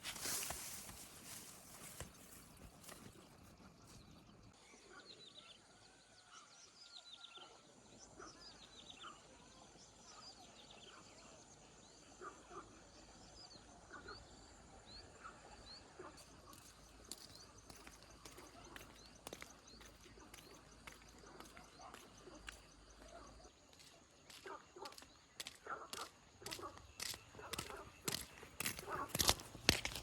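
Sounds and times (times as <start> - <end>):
birds chirping: 8.0 - 30.0.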